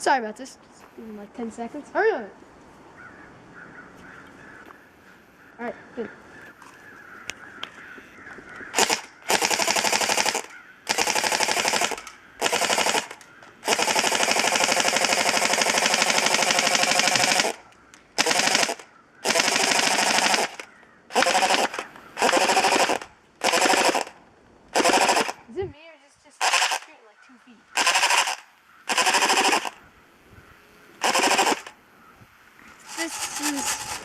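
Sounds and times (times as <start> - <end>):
airsoft rifle firing bursts: 8.7 - 17.6, 18.2 - 25.4, 26.4 - 26.9, 27.8 - 29.8, 31.0 - 31.8, 32.9 - 34.0.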